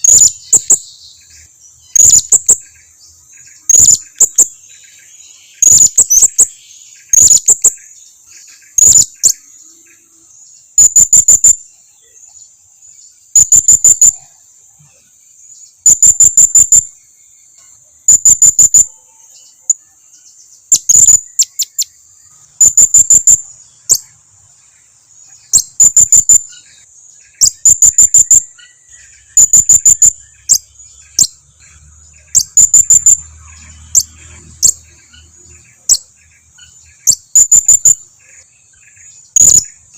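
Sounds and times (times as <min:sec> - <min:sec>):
parrot high chirps: 0:00.0 - 0:00.9, 0:01.9 - 0:02.6, 0:03.7 - 0:04.5, 0:05.6 - 0:06.5, 0:07.1 - 0:07.8, 0:08.8 - 0:09.4, 0:20.7 - 0:21.9, 0:22.6 - 0:24.1, 0:25.5 - 0:31.4, 0:32.3 - 0:38.0, 0:39.4 - 0:39.8.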